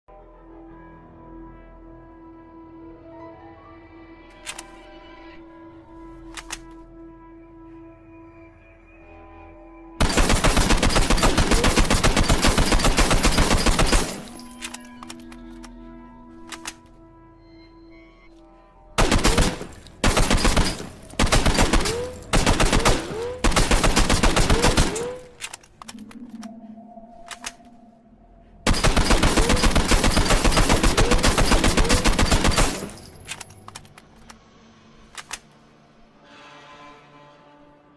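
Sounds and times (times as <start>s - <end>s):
automatic rifle bursts: 10.0s - 15.2s, 19.0s - 25.6s, 28.7s - 33.8s.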